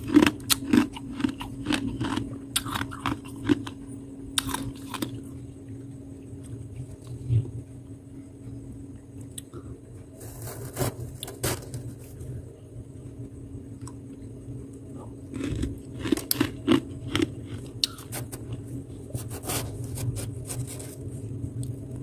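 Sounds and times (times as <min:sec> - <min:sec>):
frost being chewed with crunches: 0:00.0 - 0:07.3, 0:14.8 - 0:21.8.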